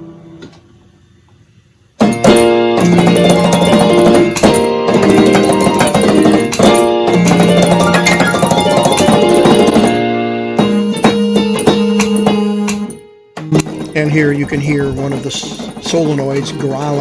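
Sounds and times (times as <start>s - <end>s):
electronic keyboard piano chords: 2.0s - 17.0s.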